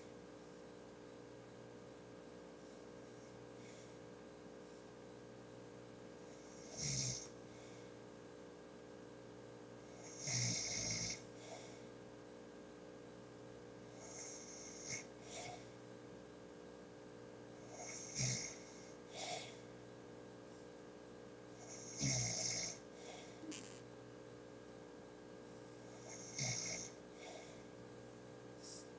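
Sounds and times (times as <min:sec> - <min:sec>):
man snoring: 0:06.4 - 0:07.3, 0:10.0 - 0:11.6, 0:14.0 - 0:15.6, 0:17.7 - 0:19.4, 0:21.6 - 0:22.8, 0:25.9 - 0:27.6.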